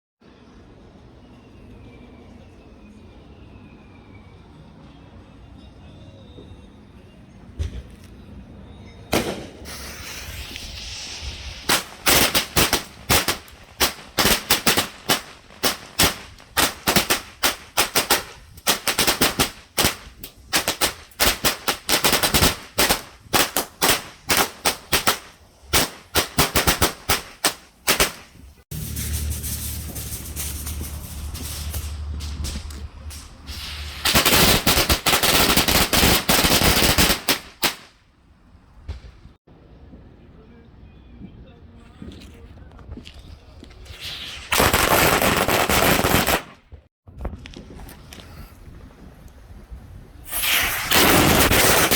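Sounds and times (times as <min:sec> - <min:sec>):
firework hissing: 0:09.2 - 0:37.3, 0:50.2 - 0:51.9
rapid firework bangs: 0:09.2 - 0:37.9, 0:50.3 - 0:51.9
low rumble: 0:28.7 - 0:34.1.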